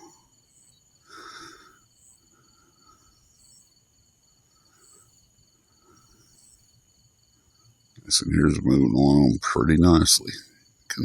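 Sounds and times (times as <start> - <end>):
short insect chirps: 0.0 - 8.2
crickets trilling: 0.0 - 11.0.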